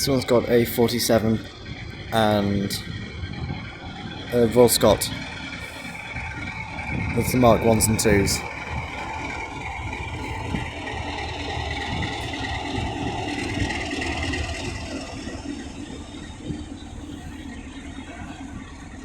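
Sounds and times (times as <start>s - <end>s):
train rumbling past: 0.0s - 19.0s.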